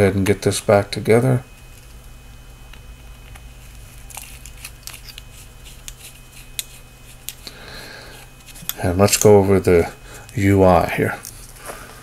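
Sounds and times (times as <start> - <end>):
faint low hum: 0.0 - 12.0
metallic clicks and scraping: 4.0 - 7.4.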